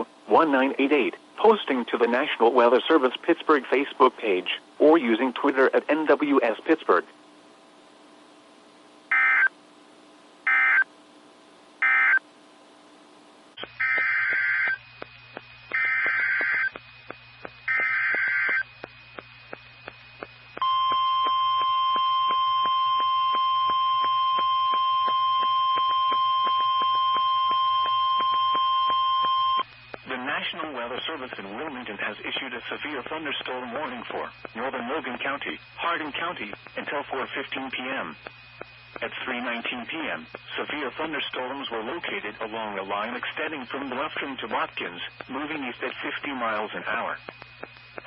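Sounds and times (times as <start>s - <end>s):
low hum: 13.0s - 39.2s
warbling data tone bursts: 13.6s - 14.9s, 15.6s - 16.8s, 17.6s - 18.8s.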